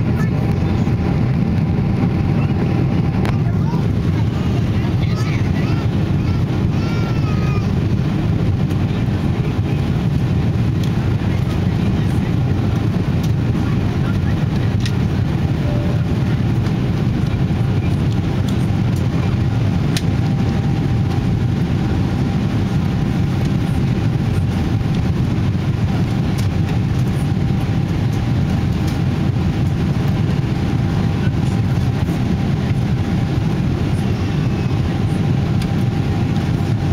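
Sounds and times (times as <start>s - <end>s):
jet engine rumble in flight: 0.0s - 36.9s.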